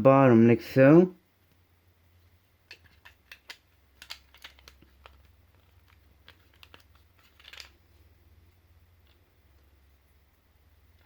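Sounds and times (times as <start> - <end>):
plastic pieces clicking and tapping: 2.7 - 7.8.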